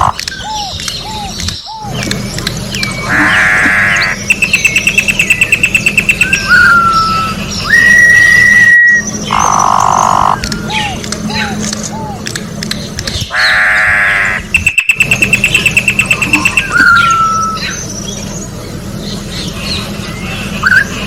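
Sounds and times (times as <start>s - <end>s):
bird whistled song: 0.0s - 12.2s, 14.5s - 18.5s, 19.1s - 21.0s
low steady hum: 0.0s - 21.0s.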